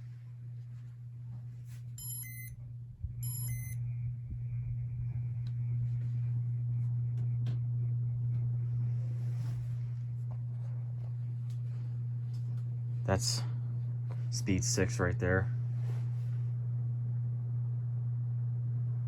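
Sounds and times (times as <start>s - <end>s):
ceiling fan motor humming: 0.0s - 19.0s
short electronic beeps: 2.0s - 2.5s, 3.2s - 3.8s.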